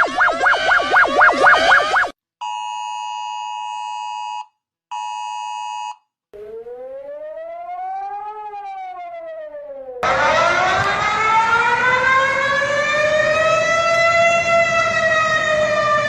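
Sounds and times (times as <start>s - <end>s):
siren wailing: 0.0s - 2.1s, 6.4s - 16.0s
two-pitched alarm tone: 0.0s - 2.8s.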